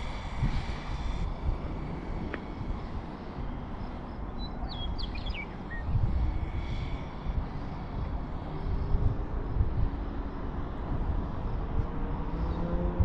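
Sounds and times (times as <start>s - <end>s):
wind buffeting microphone: 0.0s - 13.0s
bird chirping: 4.3s - 5.9s.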